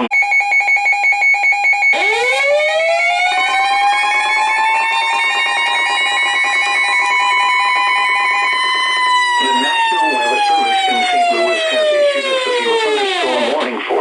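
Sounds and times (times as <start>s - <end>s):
loud pulsing beep: 0.0s - 2.2s
siren winding up: 0.0s - 13.7s.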